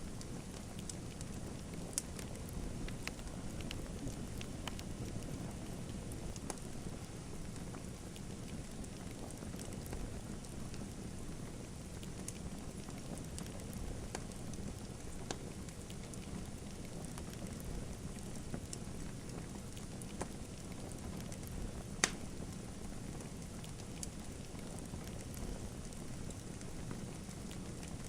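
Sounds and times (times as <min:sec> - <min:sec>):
wood fire crackling: 0:00.0 - 0:28.0
sharp pops of fire: 0:22.0 - 0:22.3.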